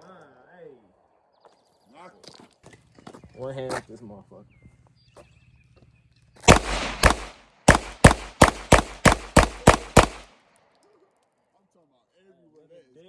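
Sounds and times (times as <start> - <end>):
airsoft pistol shots: 6.4 - 10.4.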